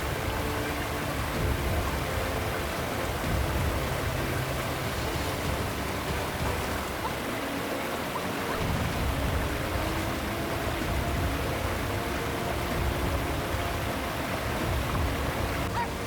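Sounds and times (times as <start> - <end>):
water rushing: 0.0 - 16.0
low rumble: 8.6 - 15.8.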